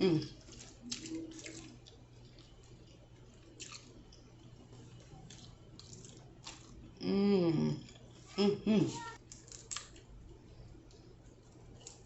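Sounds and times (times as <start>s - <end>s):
chewing food: 0.2s - 7.0s.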